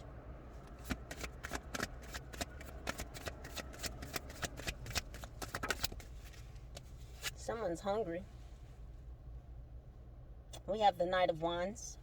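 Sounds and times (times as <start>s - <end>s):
cards being shuffled: 0.7s - 7.4s.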